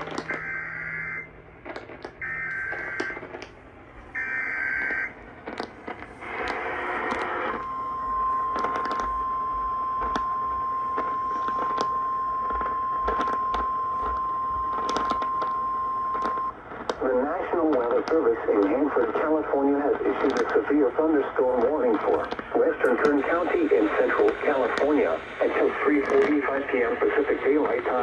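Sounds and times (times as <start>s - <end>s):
static crackles: 0.0s - 28.0s
steady warning alarm tone: 0.3s - 1.3s, 2.2s - 3.3s, 4.1s - 5.1s, 6.7s - 16.6s.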